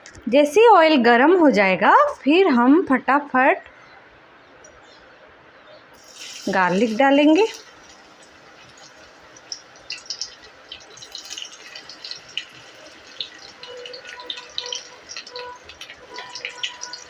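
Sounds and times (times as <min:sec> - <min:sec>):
garlic sizzling in hot oil: 0:05.9 - 0:17.0.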